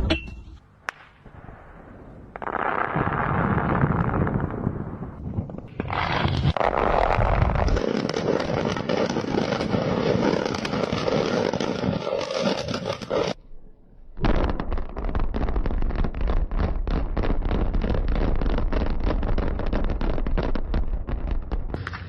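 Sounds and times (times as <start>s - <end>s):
rubble collapsing: 1.3s - 13.1s.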